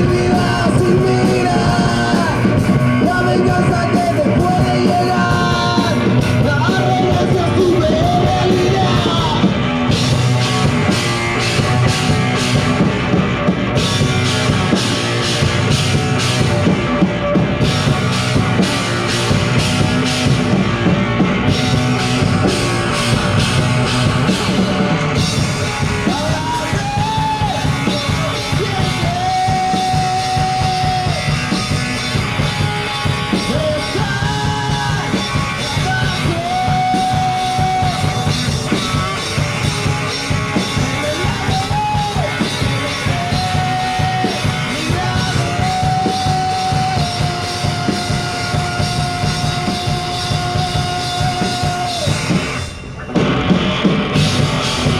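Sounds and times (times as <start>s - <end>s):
person singing: 0.0s - 9.6s, 25.8s - 39.2s, 40.6s - 52.4s
rock band playing live: 0.0s - 54.9s.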